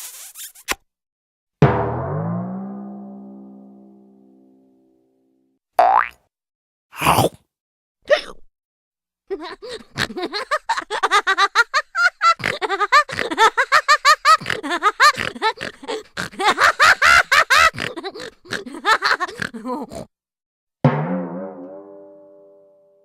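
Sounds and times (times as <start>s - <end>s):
high-pitched cackling laughter: 9.3s - 20.1s.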